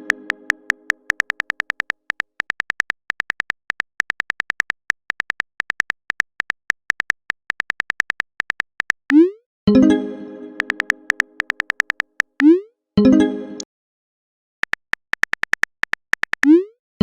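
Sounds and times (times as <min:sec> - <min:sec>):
rapid sharp clicks: 0:00.1 - 0:09.2, 0:10.6 - 0:12.5, 0:14.6 - 0:16.6.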